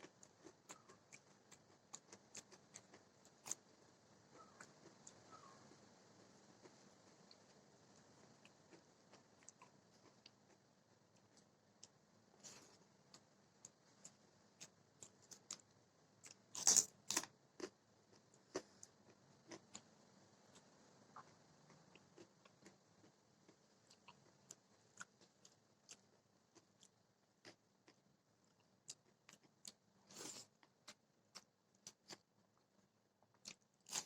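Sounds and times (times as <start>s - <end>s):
person chewing crunchy food: 0.0s - 3.6s, 16.2s - 19.8s, 20.6s - 32.2s, 33.3s - 34.0s.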